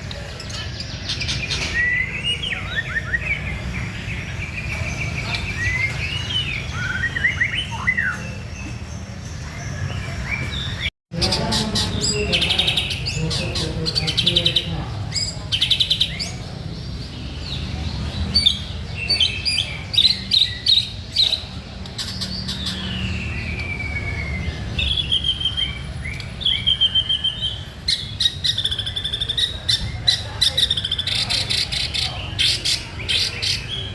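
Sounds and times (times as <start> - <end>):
bird singing whistles and trills: 5.6 - 8.4, 22.6 - 29.2.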